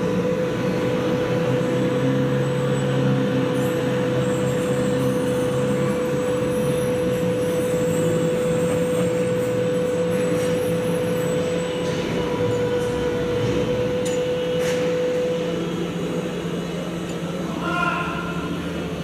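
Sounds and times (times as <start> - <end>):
heavy machinery drone: 0.0 - 19.0
mid-pitched machine whine: 0.0 - 19.0.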